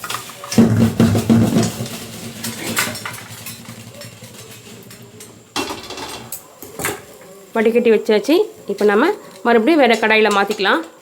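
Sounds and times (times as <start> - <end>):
metal kitchenware scraping: 0.0 - 7.2.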